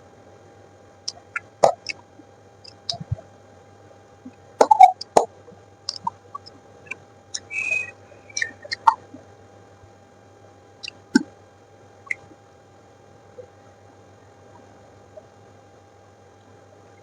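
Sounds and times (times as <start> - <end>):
wet mouth chewing sounds: 1.1 - 2.0, 2.7 - 3.2, 4.6 - 5.3, 5.9 - 6.5, 7.4 - 9.0
short hissy sound: 7.4 - 9.0.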